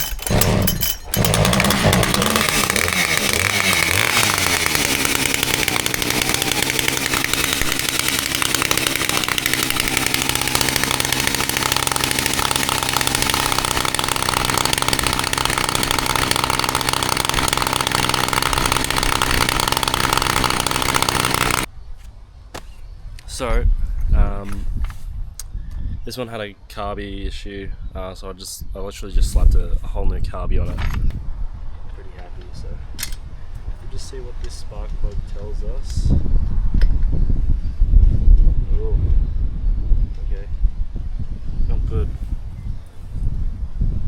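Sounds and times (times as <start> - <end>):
chainsaw engine revving: 0.0 - 21.7.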